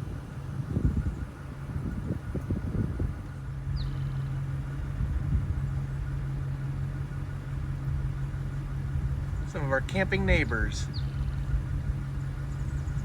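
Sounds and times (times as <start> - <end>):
car engine idling: 0.0 - 13.0
low rumbles: 0.0 - 13.0
bird chirp: 3.7 - 4.4, 10.7 - 13.0.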